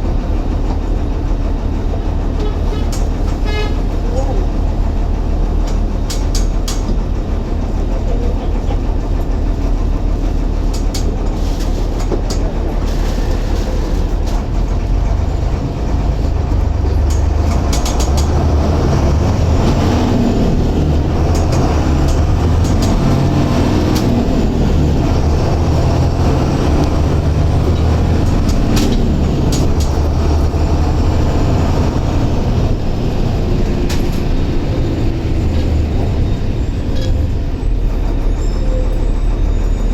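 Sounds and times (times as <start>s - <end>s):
bus diesel engine droning: 0.0s - 39.9s
rattles and clicks: 5.6s - 7.2s, 10.3s - 38.3s.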